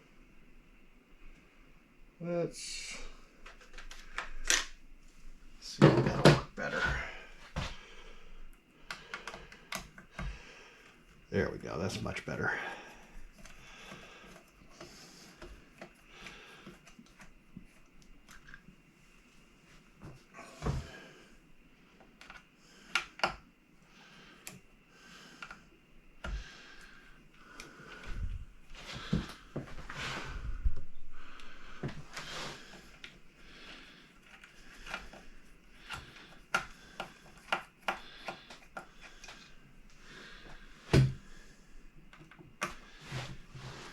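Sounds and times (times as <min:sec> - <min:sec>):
rustling and scraping: 0:26.3 - 0:43.9.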